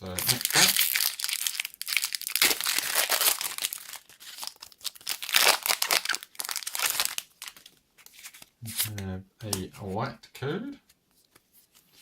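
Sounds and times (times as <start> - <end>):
foil wrapper tearing and crinkling: 0.0 - 8.9.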